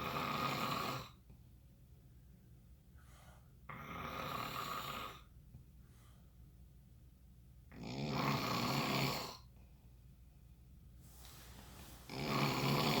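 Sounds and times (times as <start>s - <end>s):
quiet breathing: 0.0s - 6.8s, 9.3s - 13.0s
person snoring: 12.1s - 13.0s.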